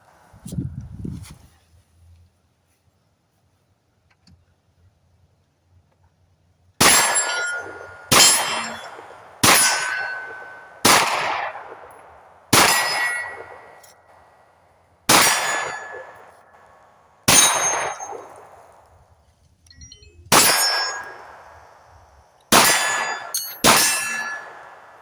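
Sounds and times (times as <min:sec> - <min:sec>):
steel target ringing: 0:06.8 - 0:12.0, 0:12.6 - 0:13.9, 0:15.1 - 0:18.8, 0:19.9 - 0:25.0
pistol shots: 0:06.8 - 0:14.4, 0:15.1 - 0:19.0, 0:20.3 - 0:25.0.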